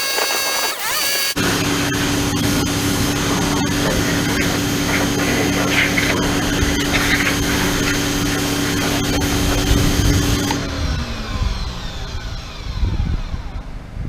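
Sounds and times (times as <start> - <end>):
pressure washer motor humming: 0.0 - 14.0
water jet hissing: 2.7 - 10.6.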